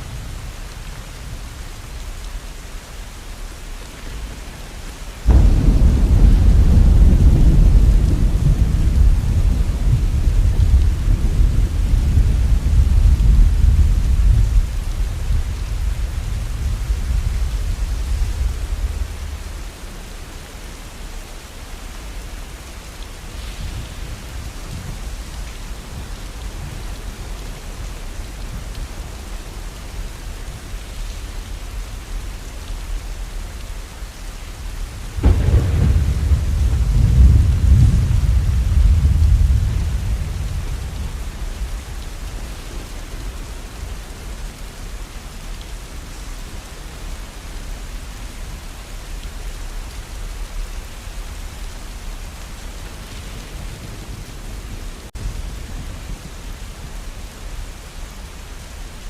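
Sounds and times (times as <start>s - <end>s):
steady rain: 0.0s - 59.0s
thunder rumbling: 5.3s - 20.1s, 35.0s - 44.4s.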